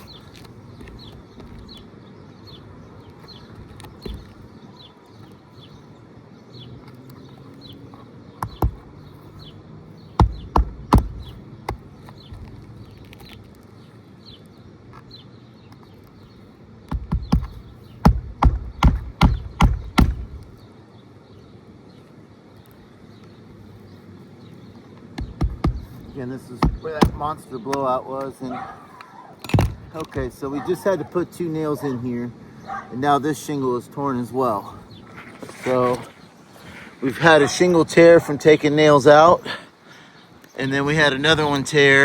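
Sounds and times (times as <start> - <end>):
hammer driving nails: 16.9 - 20.4.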